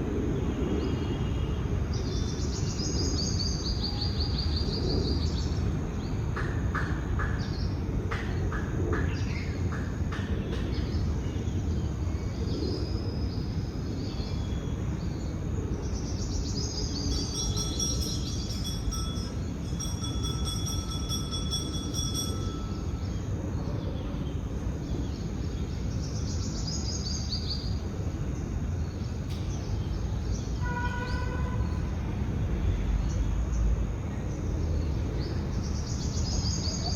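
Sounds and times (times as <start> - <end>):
low rushing outdoor noise: 0.0 - 30.6
birds chirping: 13.3 - 31.3.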